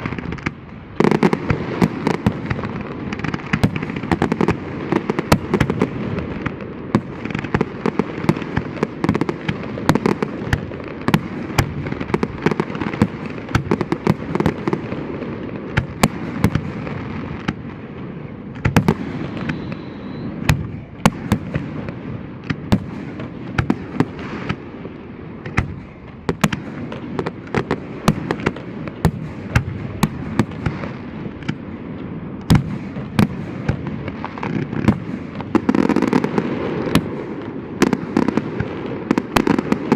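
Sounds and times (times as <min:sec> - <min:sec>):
fireworks bangs: 0:00.0 - 0:39.9
firework whistle: 0:18.8 - 0:21.8.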